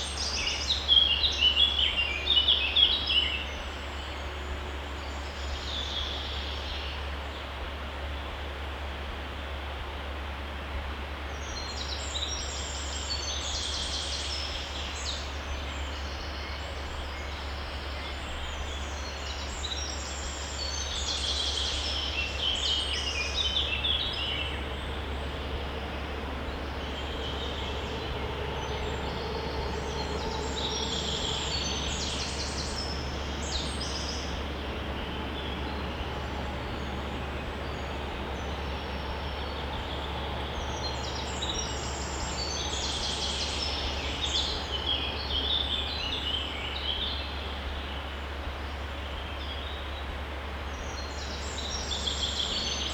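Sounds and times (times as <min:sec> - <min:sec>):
songbird singing: 0:00.0 - 0:06.9, 0:11.4 - 0:50.1, 0:50.7 - 0:52.9
stream running: 0:18.8 - 0:52.9
steady low rumble: 0:23.2 - 0:47.1.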